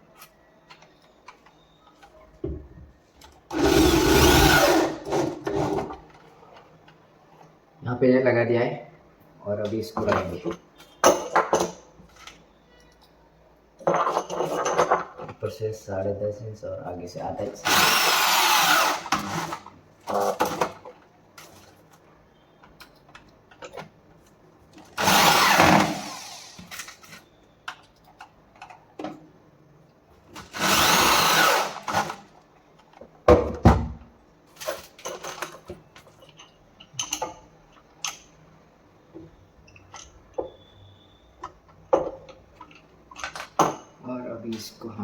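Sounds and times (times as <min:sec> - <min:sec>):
power drill driving screws: 0:03.5 - 0:05.9, 0:17.6 - 0:19.7, 0:25.0 - 0:26.7, 0:30.4 - 0:32.2
clicks and knocks of handling parts: 0:19.6 - 0:25.0, 0:26.7 - 0:29.3, 0:34.5 - 0:38.4, 0:41.4 - 0:44.6.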